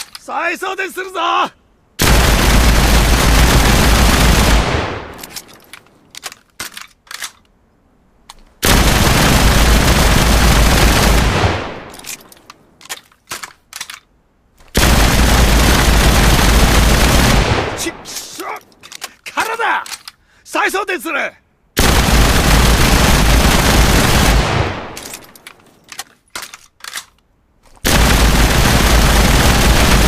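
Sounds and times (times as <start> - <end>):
submachine gun automatic fire: 2.0 - 5.0, 8.6 - 11.8, 14.8 - 17.8, 21.8 - 25.1, 27.8 - 30.0.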